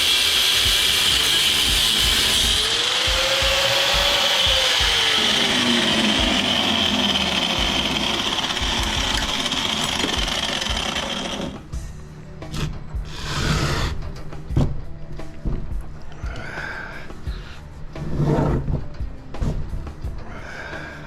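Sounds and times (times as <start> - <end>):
power tool grinding through metal: 0.0 - 11.7.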